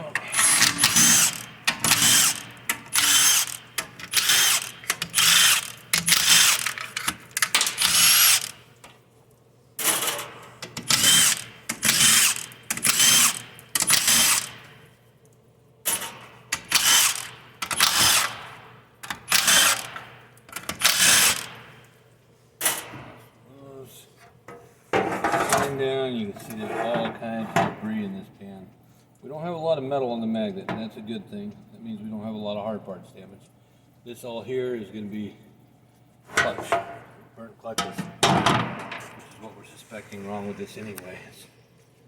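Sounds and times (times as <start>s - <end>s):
power drill spinning up: 0.4s - 6.8s, 7.7s - 8.6s, 10.9s - 14.6s, 16.8s - 18.4s, 19.3s - 19.9s, 20.8s - 21.5s.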